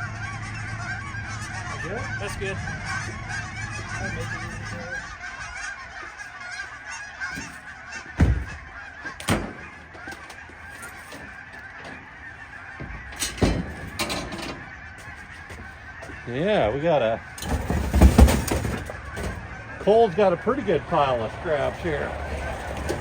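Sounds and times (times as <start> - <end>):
flock of birds calling: 0.0 - 23.0
loud thumps: 7.3 - 10.2, 12.7 - 16.2, 17.4 - 19.9.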